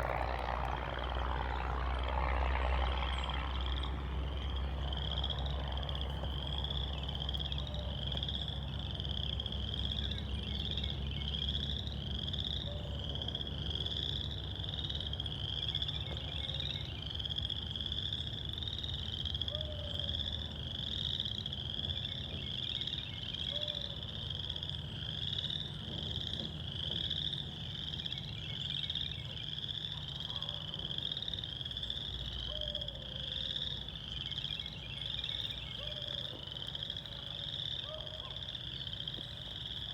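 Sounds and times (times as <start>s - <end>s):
frogs pulsing call: 0.0s - 39.9s
low steady rumble: 0.0s - 39.9s.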